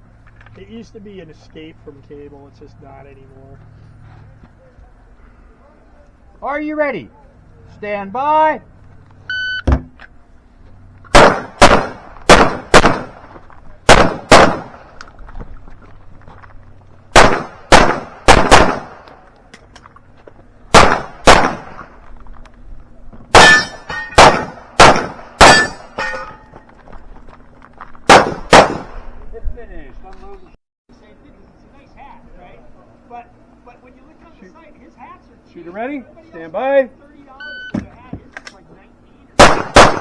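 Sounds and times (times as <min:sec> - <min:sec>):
pistol shots: 0:11.1 - 0:13.3, 0:13.9 - 0:15.0, 0:17.1 - 0:19.2, 0:20.7 - 0:21.9, 0:23.3 - 0:26.3, 0:28.1 - 0:29.1, 0:39.4 - 0:40.0
metallic ring of steel target: 0:23.3 - 0:26.6.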